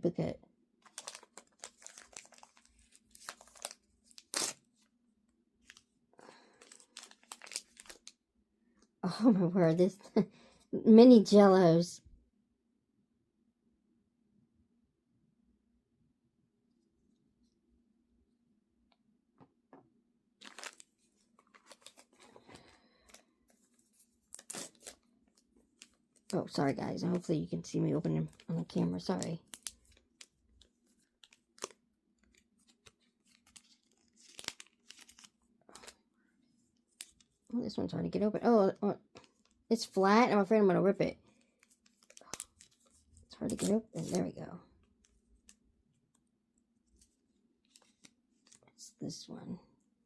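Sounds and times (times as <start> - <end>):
plastic rustle: 0.8 - 4.6, 5.6 - 8.1
plastic wrapper crinkling: 0.8 - 4.9, 5.6 - 8.2, 20.4 - 27.3, 28.2 - 37.5, 41.2 - 48.8.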